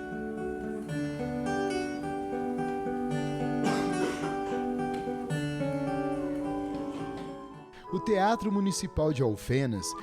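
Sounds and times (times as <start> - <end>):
classical acoustic guitar: 0.0 - 7.7.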